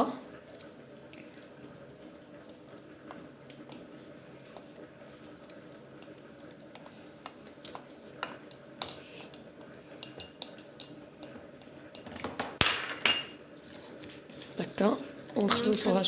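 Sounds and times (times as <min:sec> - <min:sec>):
spoon clinking on a dish: 0:12.0 - 0:13.4.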